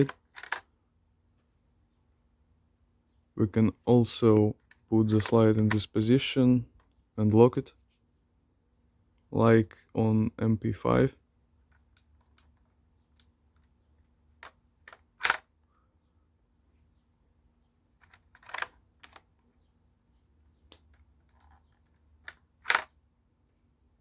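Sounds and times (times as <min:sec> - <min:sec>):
plastic bricks clacking: 0:00.0 - 0:00.6, 0:22.3 - 0:22.9.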